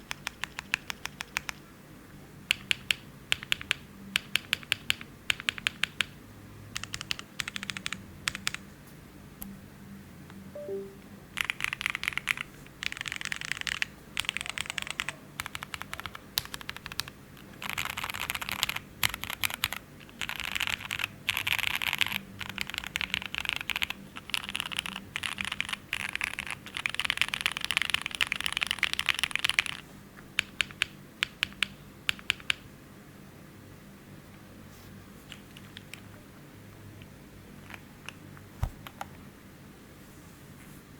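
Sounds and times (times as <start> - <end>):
mechanical keyboard typing: 0.0 - 1.6, 2.5 - 8.6, 11.4 - 29.8, 30.4 - 32.6, 37.6 - 38.2.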